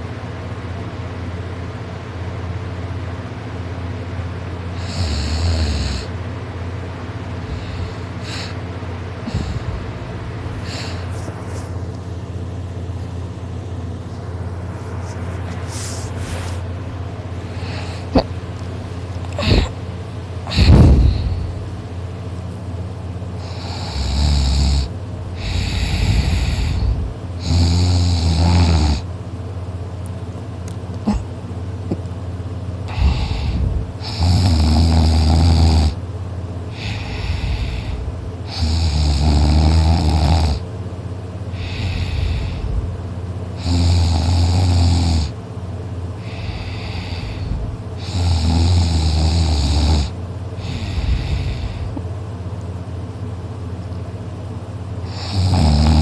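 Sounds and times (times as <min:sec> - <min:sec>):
person snoring: 0:04.8 - 0:06.1, 0:07.5 - 0:08.6, 0:09.2 - 0:09.8, 0:10.6 - 0:11.2, 0:17.5 - 0:18.3, 0:19.3 - 0:19.8, 0:20.5 - 0:21.6, 0:23.4 - 0:29.1, 0:32.9 - 0:36.0, 0:36.7 - 0:40.6, 0:41.5 - 0:42.8, 0:43.6 - 0:45.3, 0:46.2 - 0:52.0, 0:55.0 - 0:56.0.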